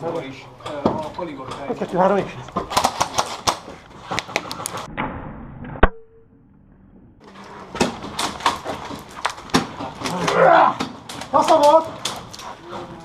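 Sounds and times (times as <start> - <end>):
airsoft guns firing: 2.7 - 3.7
pellets striking: 7.4 - 12.6.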